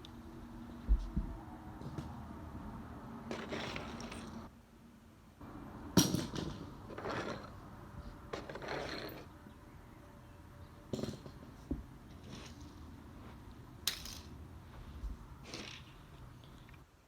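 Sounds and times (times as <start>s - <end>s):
scraping and rustling: 3.3s - 4.5s, 6.5s - 9.4s.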